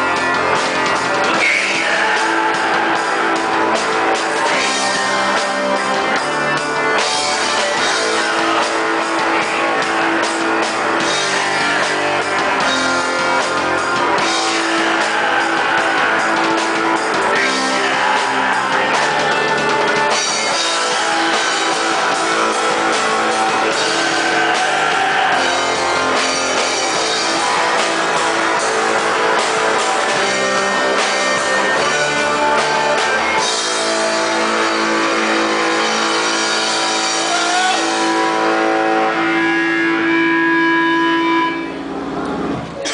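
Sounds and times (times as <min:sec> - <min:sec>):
distorted electric guitars: 0:00.0 - 0:42.9
drum kit: 0:00.0 - 0:42.9.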